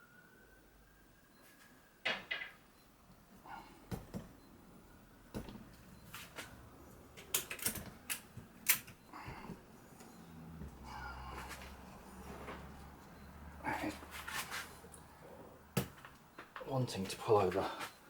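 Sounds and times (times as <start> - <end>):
clicks and knocks of handling metal: 7.2 - 9.0.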